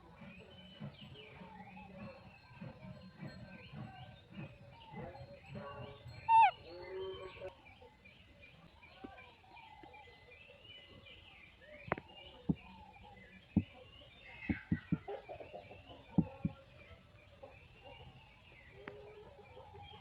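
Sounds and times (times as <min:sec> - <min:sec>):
animal chirping and squeaking: 0:06.2 - 0:06.7.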